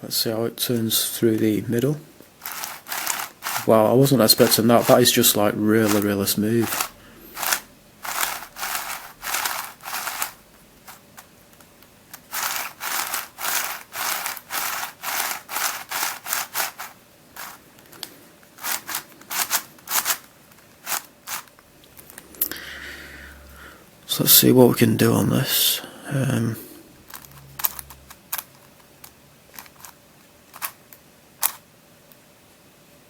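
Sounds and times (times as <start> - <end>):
twisty puzzle clicking: 2.4 - 3.7, 5.8 - 22.2, 27.0 - 30.8, 31.4 - 31.6.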